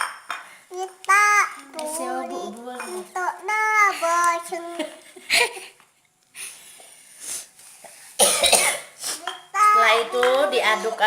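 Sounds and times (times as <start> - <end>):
child's sing-song voice: 0.7 - 5.1, 9.2 - 10.8.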